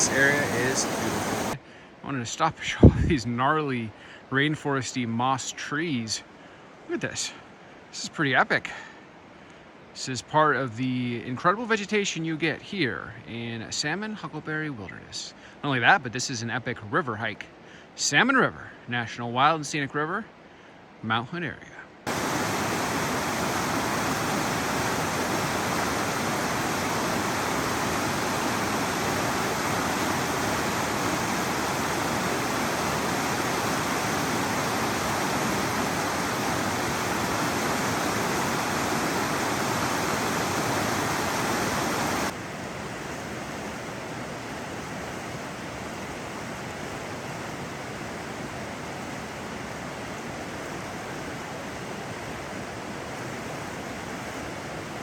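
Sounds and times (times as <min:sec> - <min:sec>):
water rushing over rocks: 0:00.0 - 0:01.6, 0:22.1 - 0:43.0.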